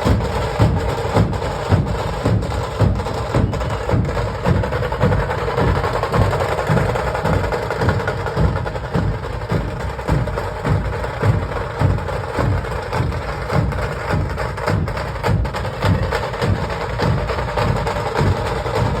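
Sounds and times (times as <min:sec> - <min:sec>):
drums pounding a steady beat: 0:00.0 - 0:19.0.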